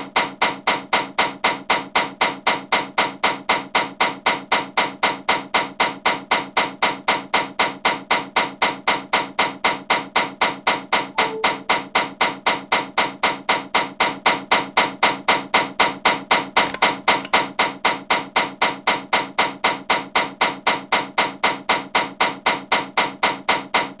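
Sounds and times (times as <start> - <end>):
ceiling fan knocking: 16.6 - 17.6.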